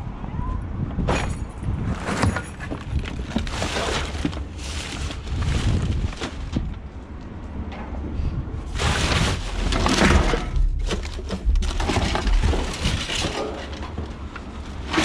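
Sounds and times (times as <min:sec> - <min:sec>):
junk rummaged by hand: 0:01.1 - 0:06.9, 0:08.7 - 0:15.0
steady low rumble: 0:02.9 - 0:14.9.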